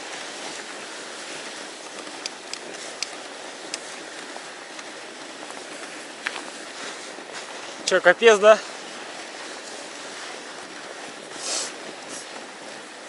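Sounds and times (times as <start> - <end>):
bike tyres rolling on trail: 0.0 - 13.0
sharp ticks: 2.0 - 3.8.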